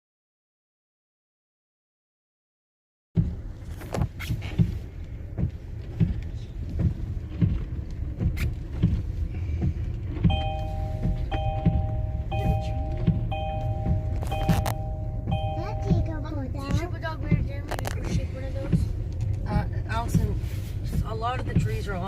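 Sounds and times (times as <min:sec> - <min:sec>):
car rumble: 0:03.2 - 0:22.0
thumps: 0:03.2 - 0:22.0
two-note electronic warning chime: 0:10.3 - 0:16.3.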